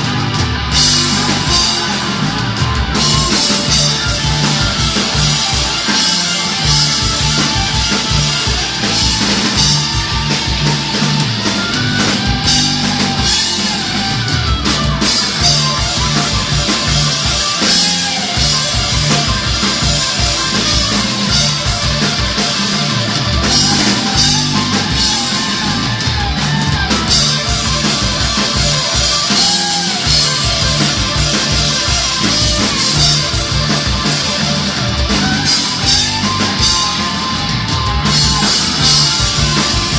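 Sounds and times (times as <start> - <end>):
drum kit: 0.0 - 39.9
electric guitar lead line: 0.0 - 39.9.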